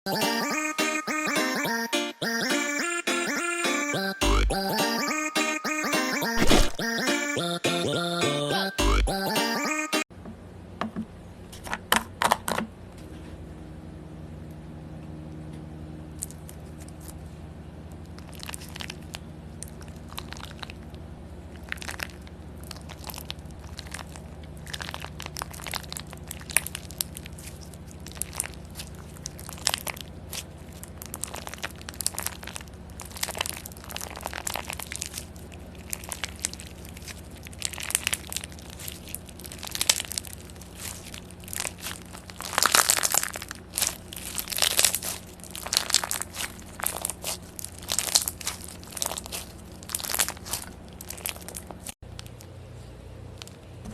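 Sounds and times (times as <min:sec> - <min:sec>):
slime crunching and crackling: 0:18.0 - 0:21.0, 0:21.6 - 0:52.4.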